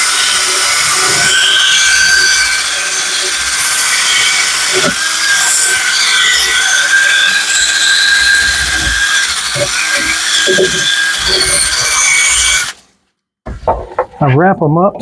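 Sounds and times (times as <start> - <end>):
power tool scrubbing steel: 0.0 - 12.8.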